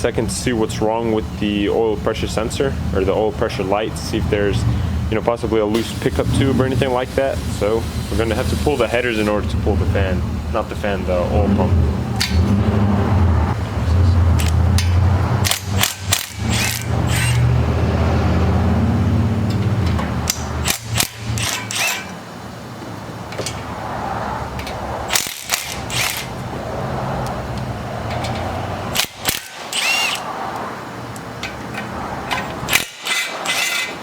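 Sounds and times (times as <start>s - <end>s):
metal clanks of tools: 12.2s - 12.5s, 23.3s - 23.6s, 28.1s - 30.2s, 31.4s - 34.0s
ratchet clicks: 14.4s - 17.5s, 19.5s - 22.2s, 24.6s - 26.4s, 27.6s - 30.3s, 31.2s - 34.0s
power tool running: 15.4s - 17.6s, 20.6s - 22.2s, 25.1s - 26.3s, 29.0s - 30.3s, 32.7s - 34.0s.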